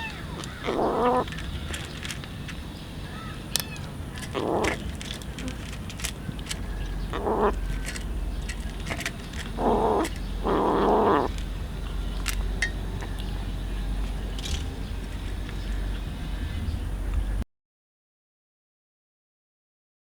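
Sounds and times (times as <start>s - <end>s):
animal calling: 0.0s - 17.4s
steady low hum: 0.0s - 17.4s.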